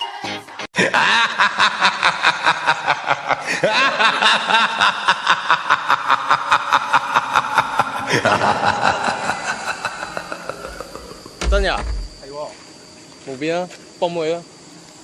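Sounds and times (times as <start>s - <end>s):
rhythmic snickering laughter: 0.8s - 11.4s.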